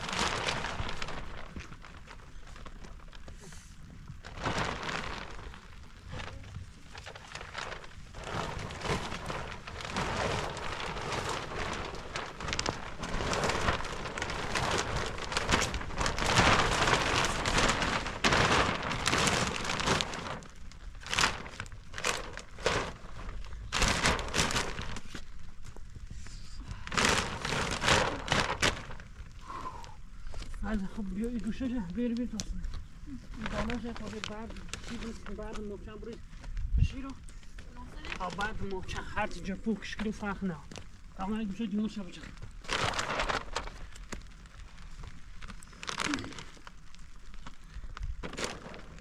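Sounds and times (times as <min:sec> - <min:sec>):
rain falling: 0:00.0 - 0:25.7
rustling and crackling bursts: 0:00.0 - 0:49.0.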